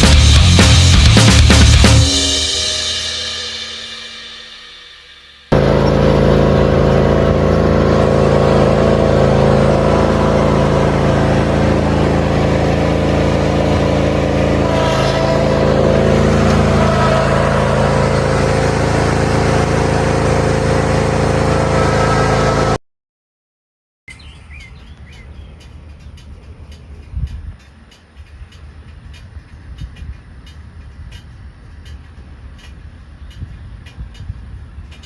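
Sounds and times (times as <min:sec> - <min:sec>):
vehicle engine running: 0:00.0 - 0:04.1, 0:05.5 - 0:22.8.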